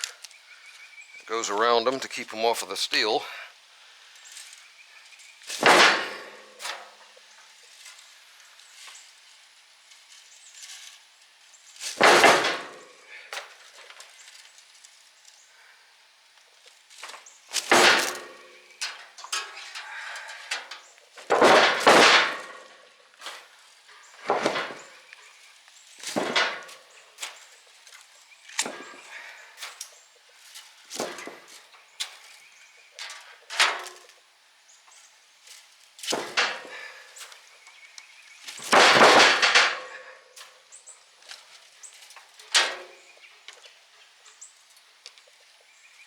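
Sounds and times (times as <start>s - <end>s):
metal clanks and knocks: 5.5s - 7.1s, 11.8s - 14.0s, 17.0s - 25.2s, 26.0s - 27.4s, 28.6s - 29.8s, 31.0s - 31.7s, 33.0s - 34.2s, 36.1s - 37.1s, 38.6s - 40.2s, 42.2s - 43.0s.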